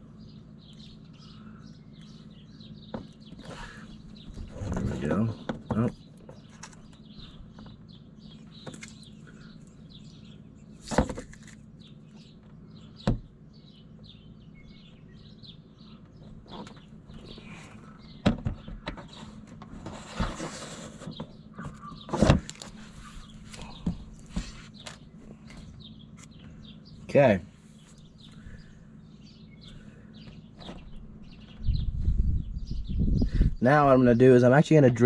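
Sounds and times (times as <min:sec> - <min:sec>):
small birds chirping: 0:00.0 - 0:35.0
handling rustle: 0:18.7 - 0:26.5.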